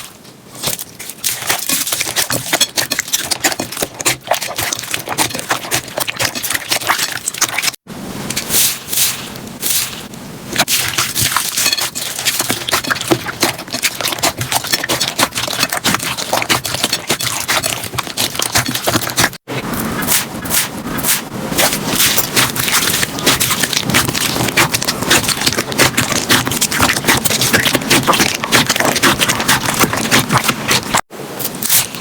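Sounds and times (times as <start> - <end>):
slime crackling and popping: 20.0 - 31.1.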